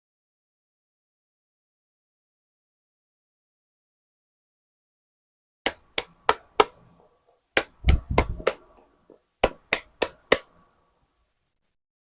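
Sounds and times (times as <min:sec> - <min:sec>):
sharp taps on hard surface: 0:07.6 - 0:10.6.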